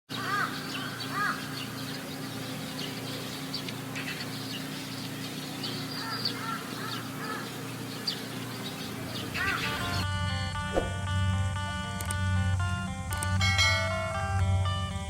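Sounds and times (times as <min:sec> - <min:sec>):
birds calling: 0:00.1 - 0:11.0
steady low hum: 0:00.1 - 0:15.0.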